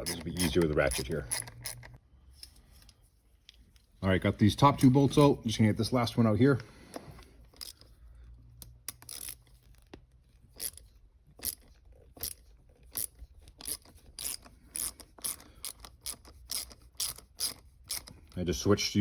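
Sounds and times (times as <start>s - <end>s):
hand ratchet clicking: 0.0s - 2.0s, 7.5s - 7.9s, 8.6s - 9.4s, 10.6s - 18.4s.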